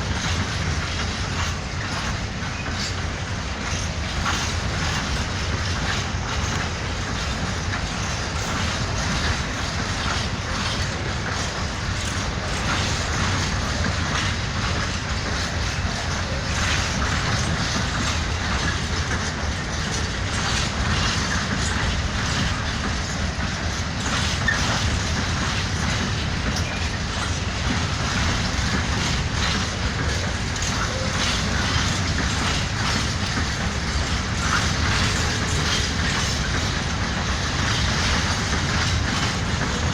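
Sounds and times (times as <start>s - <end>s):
train wheels clacking over rails: 0.0s - 39.9s.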